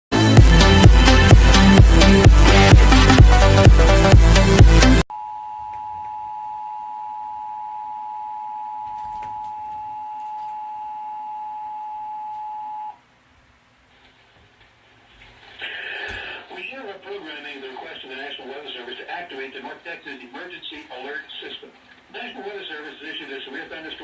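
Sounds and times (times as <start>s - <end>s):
music with strong beat: 0.1s - 5.0s.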